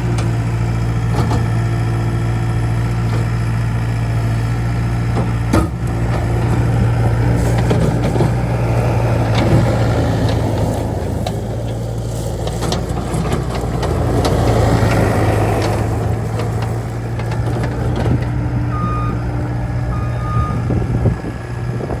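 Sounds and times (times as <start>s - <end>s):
diesel engine running: 0.0s - 22.0s
backup alarm beeps: 18.7s - 19.2s, 19.8s - 20.7s.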